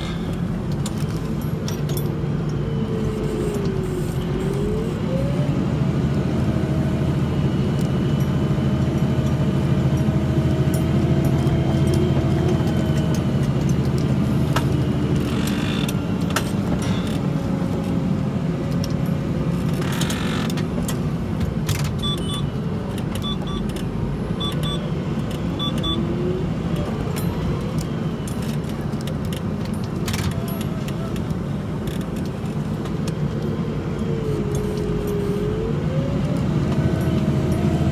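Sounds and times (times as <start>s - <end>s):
tractor engine running: 0.0s - 37.9s.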